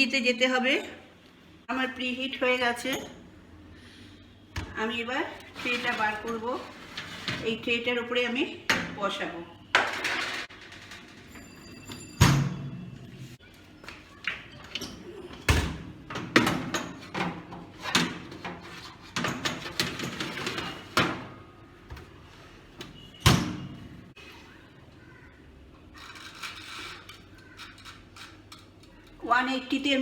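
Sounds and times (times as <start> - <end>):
metal baking tray clattering: 5.5 - 7.7, 9.8 - 11.1, 16.4 - 21.3.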